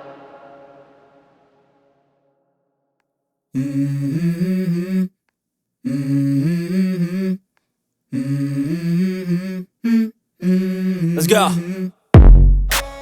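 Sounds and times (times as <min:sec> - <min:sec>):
person humming a melody: 0:03.6 - 0:05.1, 0:05.9 - 0:07.4, 0:08.1 - 0:11.9.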